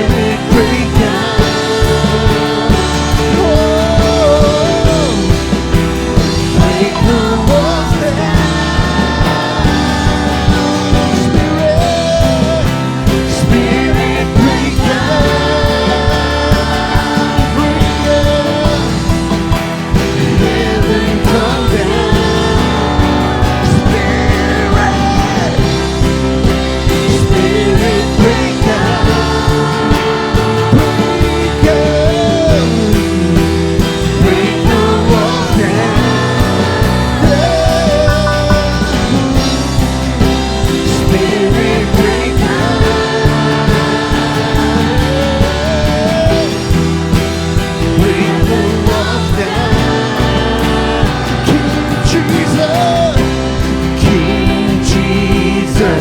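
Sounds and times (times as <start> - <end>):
band playing upbeat rock song: 0.0 - 56.0
steady drum beat: 0.0 - 56.0
voices singing: 0.0 - 56.0.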